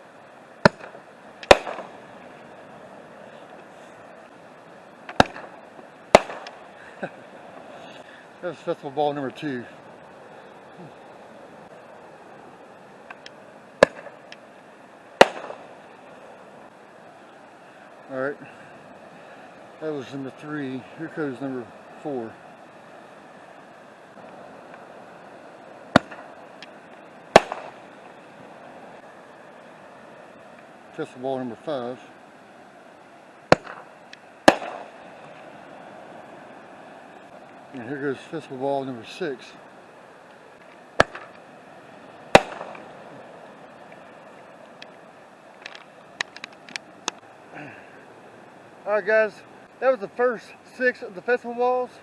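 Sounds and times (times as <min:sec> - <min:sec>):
firework shell bursting with crackle: 0:00.6 - 0:02.0, 0:05.0 - 0:06.7, 0:13.0 - 0:14.4, 0:15.2 - 0:15.8, 0:25.9 - 0:28.0, 0:33.5 - 0:35.0, 0:40.6 - 0:41.4, 0:42.3 - 0:42.9, 0:45.6 - 0:47.2
firework launch bang: 0:27.3 - 0:27.8, 0:34.5 - 0:35.0, 0:42.3 - 0:42.8.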